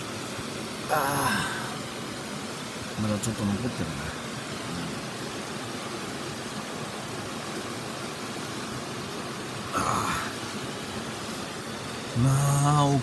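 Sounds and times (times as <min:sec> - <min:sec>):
stream rushing: 0:00.0 - 0:13.0.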